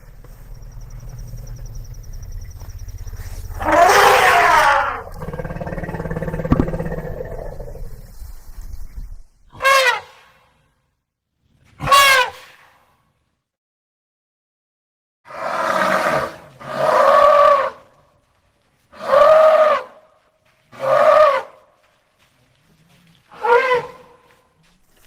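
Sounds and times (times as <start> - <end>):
elephant trumpeting: 0.1 - 8.0, 23.3 - 24.1.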